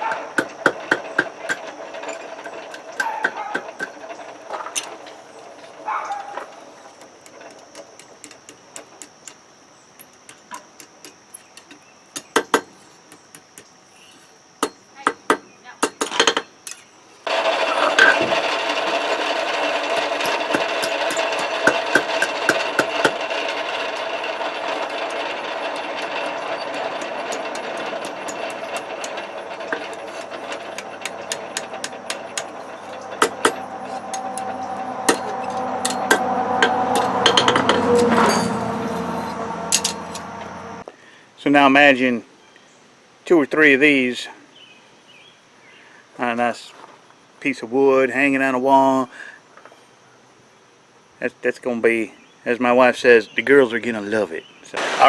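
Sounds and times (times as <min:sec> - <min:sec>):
steady machine noise: 0:00.0 - 0:08.4, 0:17.3 - 0:40.8
hammer tapping metal: 0:27.0 - 0:38.6.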